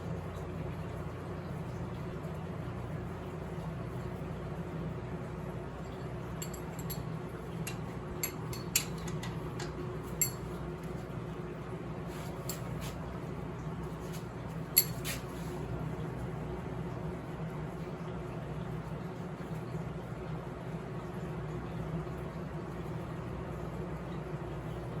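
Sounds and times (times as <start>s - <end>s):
steady low hum: 0.0s - 25.0s
metal parts and wrenches clinking: 7.7s - 10.4s.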